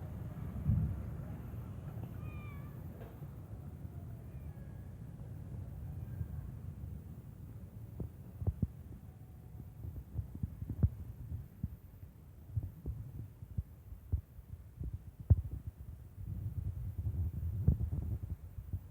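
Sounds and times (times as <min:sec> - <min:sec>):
low rumble on microphone: 0:09.8 - 0:18.9.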